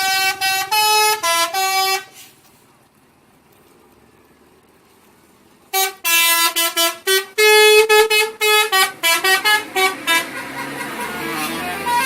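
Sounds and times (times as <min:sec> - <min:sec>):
bus musical horn tune: 0:00.0 - 0:02.4, 0:05.7 - 0:12.0.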